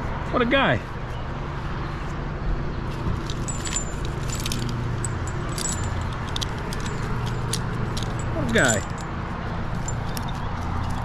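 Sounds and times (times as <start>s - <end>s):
low steady rumble: 2.9s - 9.1s
climbing hardware jingling: 2.9s - 11.0s.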